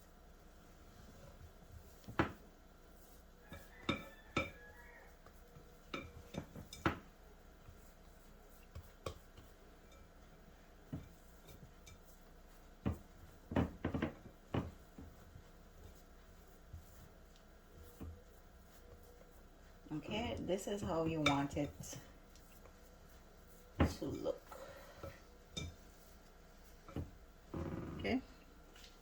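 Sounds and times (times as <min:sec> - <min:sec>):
spatula knocking on mixing bowl: 0:03.5 - 0:04.9.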